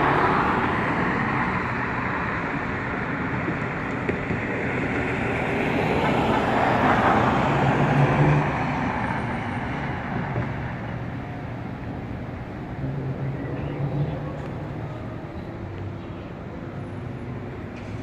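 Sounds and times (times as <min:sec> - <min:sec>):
road traffic noise: 0:00.0 - 0:18.0
vehicle passing by: 0:04.7 - 0:10.2.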